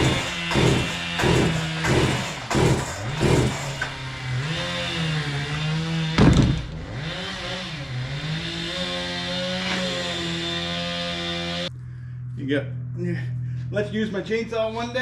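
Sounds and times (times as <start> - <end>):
chainsaw engine running roughly: 0.0 - 6.2.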